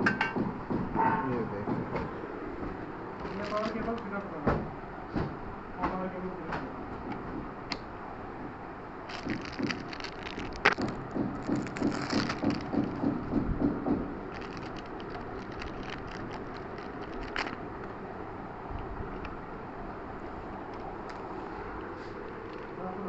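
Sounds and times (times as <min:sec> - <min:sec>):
rapid scraping or rattling: 0:09.1 - 0:13.4, 0:14.3 - 0:17.6.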